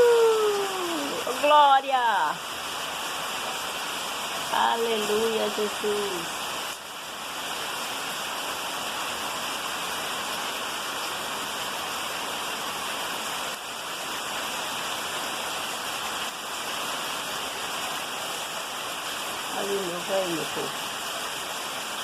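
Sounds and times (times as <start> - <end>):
rain falling: 0.0 - 22.0.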